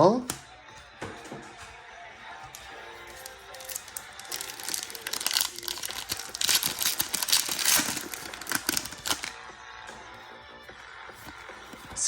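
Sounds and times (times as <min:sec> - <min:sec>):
foil wrapper tearing and crinkling: 0:03.0 - 0:09.4.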